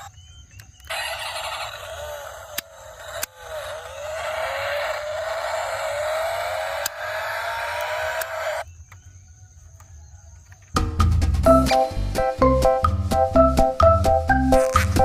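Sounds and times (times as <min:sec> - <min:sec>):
toy car electric motor whirring: 0:00.9 - 0:08.7
sharp clicks: 0:02.5 - 0:04.0, 0:06.7 - 0:09.0.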